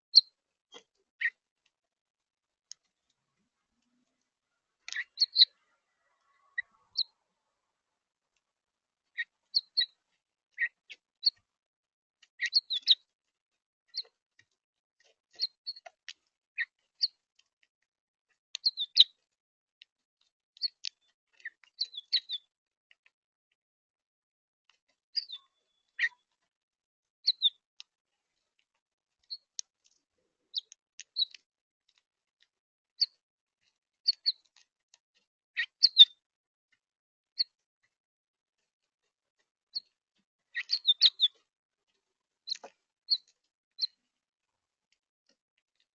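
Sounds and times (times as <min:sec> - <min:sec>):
small birds chirping: 0:00.0 - 0:01.5, 0:02.6 - 0:11.5, 0:12.2 - 0:13.2, 0:13.9 - 0:17.7, 0:18.3 - 0:23.1, 0:24.7 - 0:26.4, 0:27.2 - 0:36.3, 0:37.3 - 0:38.0, 0:39.7 - 0:41.5, 0:42.4 - 0:44.1.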